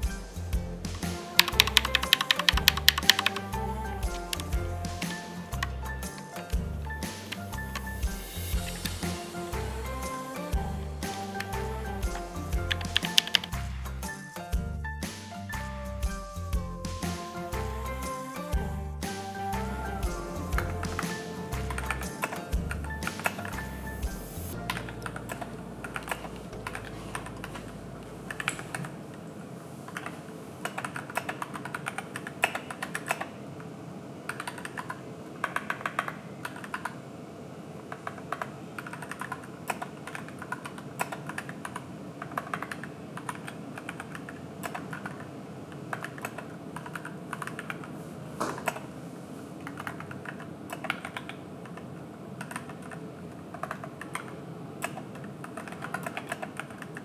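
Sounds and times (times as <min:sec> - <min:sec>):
mechanical keyboard typing: 0:01.2 - 0:03.5, 0:04.1 - 0:06.3, 0:12.6 - 0:13.6, 0:29.9 - 0:33.3, 0:34.3 - 0:37.0, 0:38.0 - 0:45.3, 0:45.9 - 0:48.0, 0:49.6 - 0:57.0.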